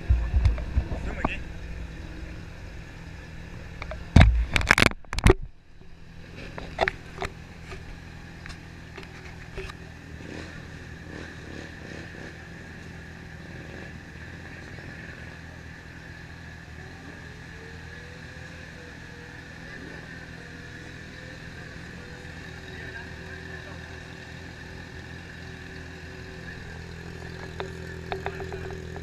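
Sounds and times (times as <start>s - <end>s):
low engine hum: 0.0s - 29.0s
camera handling knocks and scraping: 3.8s - 5.5s.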